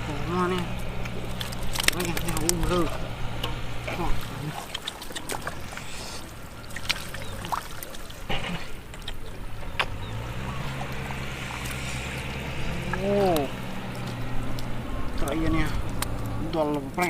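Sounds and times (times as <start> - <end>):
low steady hum: 0.0 - 17.0
muddy water splashing: 0.0 - 17.0.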